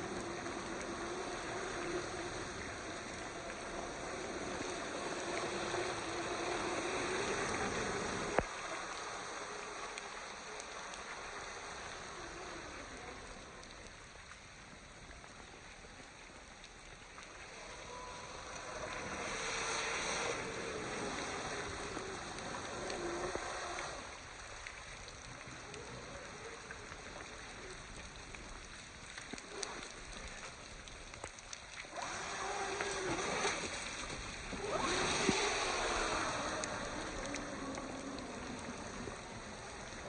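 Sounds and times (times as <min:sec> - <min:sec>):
toy truck splashing through water: 0:00.0 - 0:10.1, 0:31.9 - 0:39.8
electric motor whine: 0:00.0 - 0:13.6, 0:31.9 - 0:40.0.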